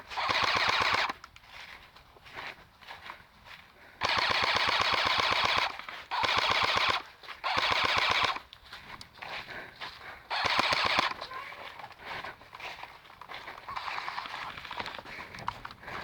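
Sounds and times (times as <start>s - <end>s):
airsoft rifle automatic fire: 0.1s - 1.2s, 4.0s - 8.4s, 10.3s - 11.2s.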